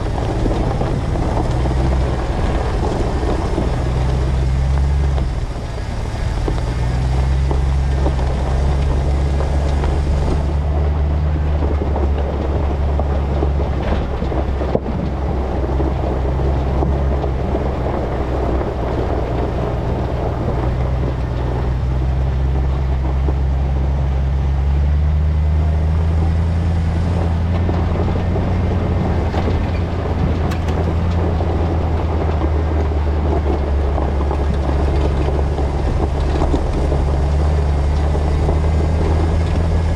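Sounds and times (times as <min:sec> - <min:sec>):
truck engine running: 0:00.0 - 0:39.9
tyres rumbling over rough ground: 0:00.0 - 0:39.9.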